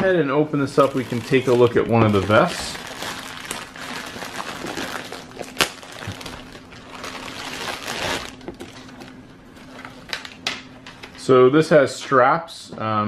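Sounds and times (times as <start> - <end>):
packaging rustling: 0.7 - 10.4.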